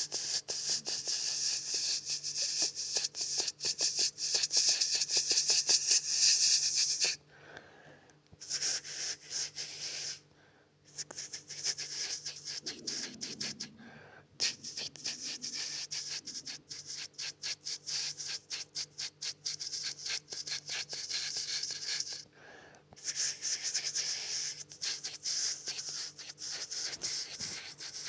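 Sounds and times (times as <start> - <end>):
rapid scratching: 11.1 - 13.7.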